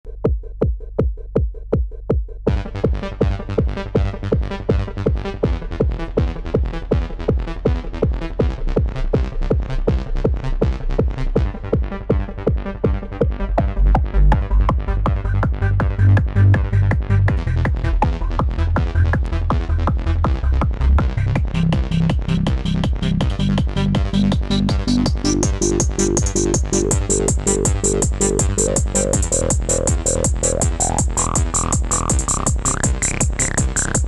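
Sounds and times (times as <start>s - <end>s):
kick drum beat: 0.0s - 34.0s
heavy synth bass: 2.4s - 34.0s
dense synth pattern: 2.5s - 34.0s
hi-hat ticks: 21.3s - 34.0s.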